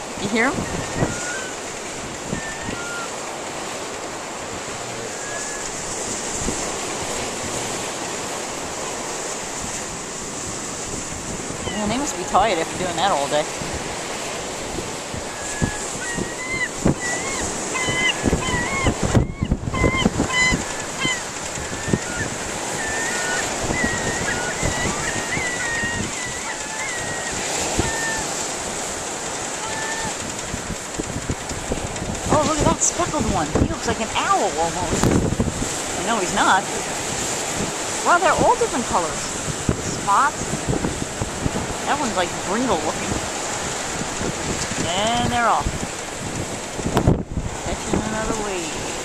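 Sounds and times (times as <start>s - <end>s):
ocean surf: 0.0s - 49.0s
wind on microphone: 0.0s - 49.0s
faint gull call: 0.6s - 3.2s, 4.9s - 5.9s, 15.2s - 28.4s, 29.4s - 30.3s.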